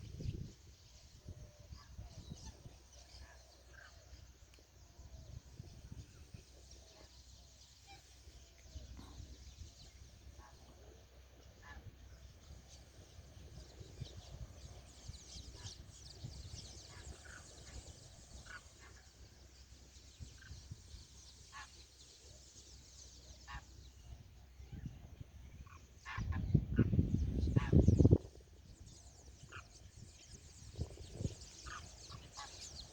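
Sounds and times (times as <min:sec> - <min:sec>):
flock of birds calling: 0:13.6 - 0:24.0, 0:25.6 - 0:28.2, 0:29.2 - 0:32.9.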